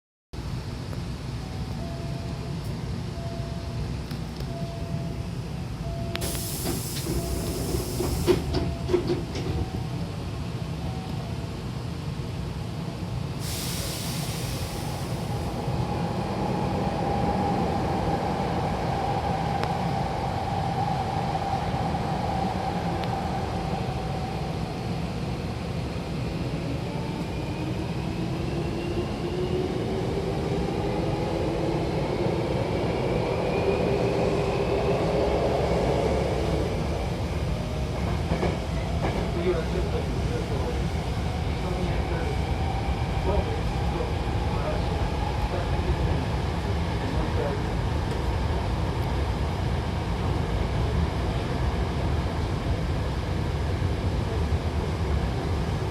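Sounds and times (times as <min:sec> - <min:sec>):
train running rumble: 0:00.5 - 0:18.4
air hiss: 0:06.2 - 0:08.5, 0:13.4 - 0:15.5.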